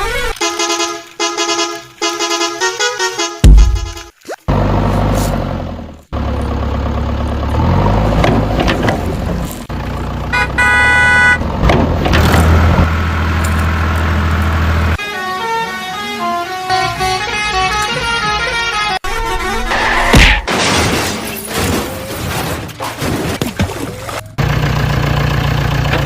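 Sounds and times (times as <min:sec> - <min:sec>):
horn blast: 0:00.4 - 0:04.2, 0:10.3 - 0:11.4, 0:15.0 - 0:20.4
heavy vehicle engine running: 0:03.4 - 0:18.4, 0:23.9 - 0:26.0.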